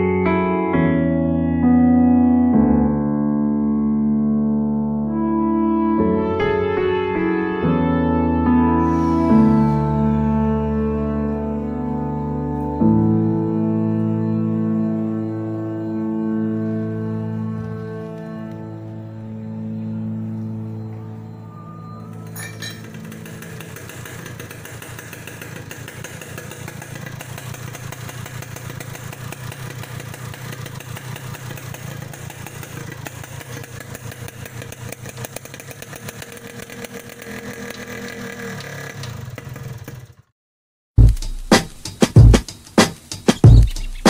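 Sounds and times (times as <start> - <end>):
loud music: 8.7 - 12.4, 41.0 - 44.0
two-stroke engine idling: 22.1 - 40.3.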